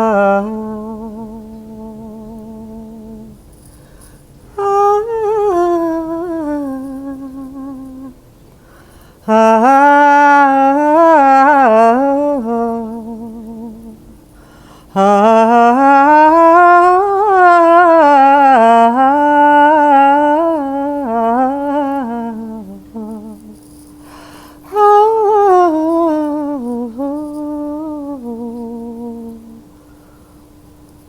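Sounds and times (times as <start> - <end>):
woman humming: 0.0 - 3.4, 4.6 - 8.2, 9.2 - 14.2, 14.9 - 23.9, 24.6 - 29.8
breath: 3.7 - 4.3, 8.6 - 9.2, 14.3 - 14.9, 23.9 - 24.6, 29.8 - 30.5.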